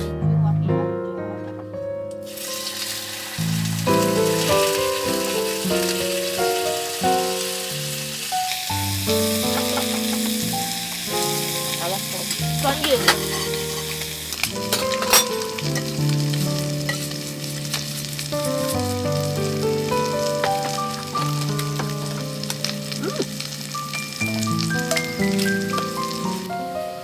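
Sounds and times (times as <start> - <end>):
food sizzling in a pan: 2.2 - 27.0.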